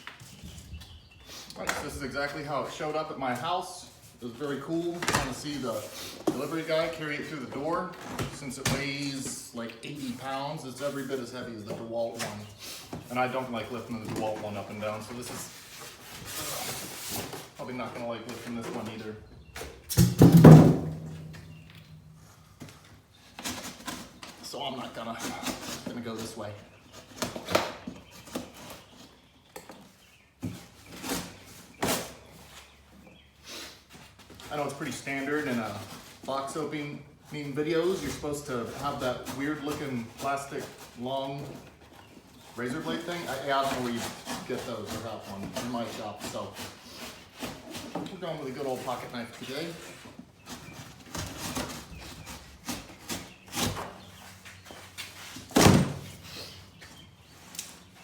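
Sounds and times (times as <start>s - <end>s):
cardboard scraping rustles: 10.0s - 32.8s, 33.8s - 58.0s
loud cardboard thump: 19.9s - 21.5s
knife cutting cardboard box: 42.7s - 49.0s.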